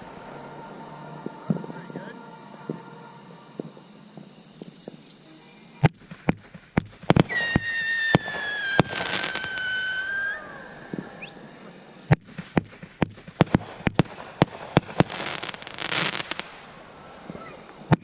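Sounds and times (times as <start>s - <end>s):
whistling firework: 0.0s - 18.0s
firework bangs and pops: 5.8s - 18.0s
firework crackling bursts: 5.8s - 18.0s.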